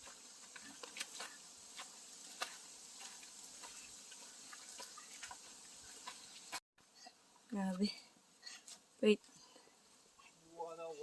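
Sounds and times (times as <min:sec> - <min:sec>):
steady hiss: 0:00.0 - 0:06.6
faint footsteps on trail: 0:00.0 - 0:10.5.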